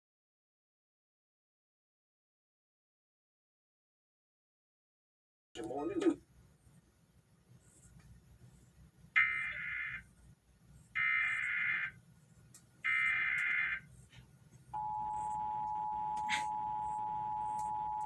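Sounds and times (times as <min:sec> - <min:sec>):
digital data bursts: 0:09.2 - 0:10.0, 0:11.0 - 0:12.0, 0:12.8 - 0:13.8
two-tone attention tone: 0:14.8 - 0:18.0.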